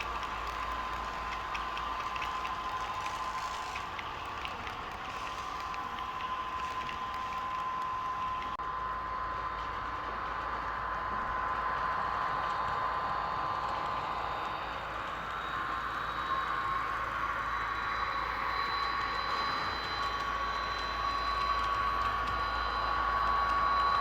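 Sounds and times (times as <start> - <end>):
model train wheels rolling on track: 0.0 - 8.6
model diesel locomotive sound: 0.0 - 24.0
steady high whine: 0.0 - 24.0.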